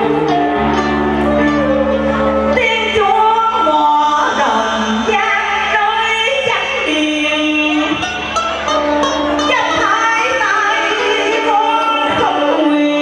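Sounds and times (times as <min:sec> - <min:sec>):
sliding bending melody: 0:07.5 - 0:12.3.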